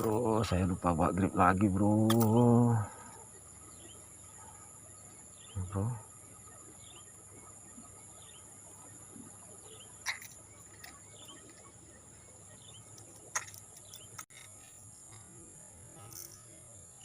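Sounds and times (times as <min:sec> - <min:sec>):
bird chirps: 0:00.0 - 0:15.2
high-pitched insect drone: 0:00.0 - 0:17.0
sharp clicks: 0:02.0 - 0:02.4.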